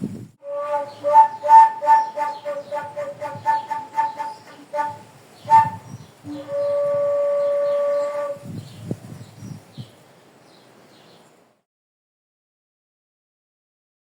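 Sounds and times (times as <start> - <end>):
person whistling notes: 0.4 - 8.2.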